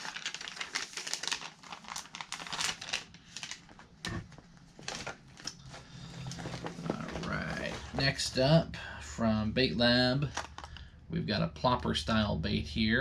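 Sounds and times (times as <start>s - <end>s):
plastic packaging crinkling: 0.0s - 8.3s, 10.2s - 10.9s.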